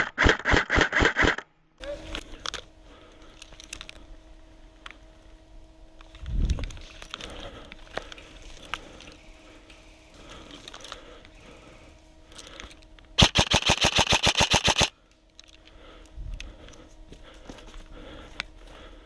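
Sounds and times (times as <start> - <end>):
airsoft gun full-auto burst: 0.0 - 1.4, 13.2 - 14.9
faint scattered shots: 13.2 - 14.9.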